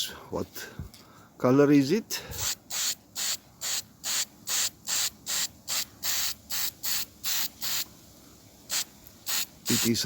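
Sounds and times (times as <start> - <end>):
spray paint hissing bursts: 2.3 - 8.0, 8.7 - 10.0.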